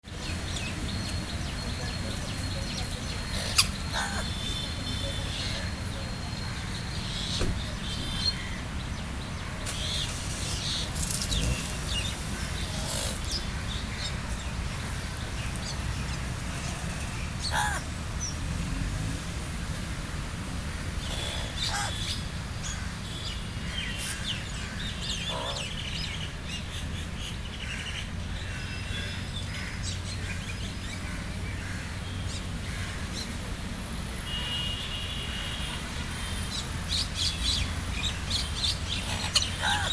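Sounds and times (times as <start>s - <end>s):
crows and birds calling: 2.7s - 8.7s, 9.3s - 16.8s, 17.4s - 17.9s, 21.0s - 26.1s, 27.6s - 33.4s, 37.2s - 39.9s.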